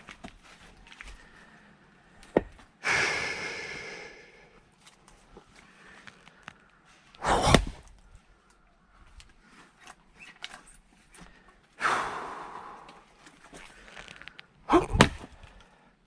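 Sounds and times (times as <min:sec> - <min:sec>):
axe chopping log: 0:07.2 - 0:07.9, 0:14.7 - 0:15.4.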